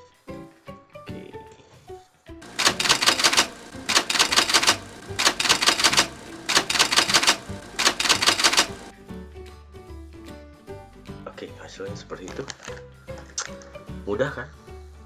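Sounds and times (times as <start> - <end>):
typewriter key clacks: 2.4 - 8.9.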